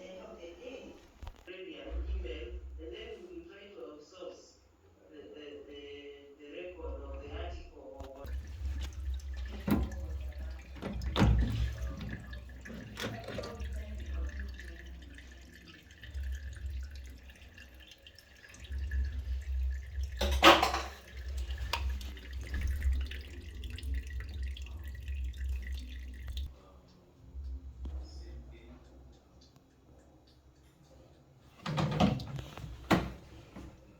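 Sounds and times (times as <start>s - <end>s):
water dripping and splashing: 8.2s - 26.5s.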